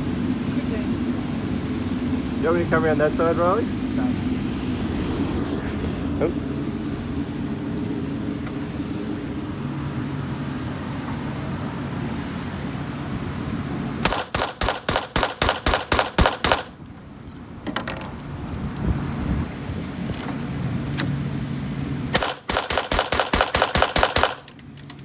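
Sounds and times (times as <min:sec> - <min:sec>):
steady low hum: 0:00.0 - 0:24.8
rifle shots fired rapidly: 0:14.0 - 0:16.8, 0:22.2 - 0:24.5.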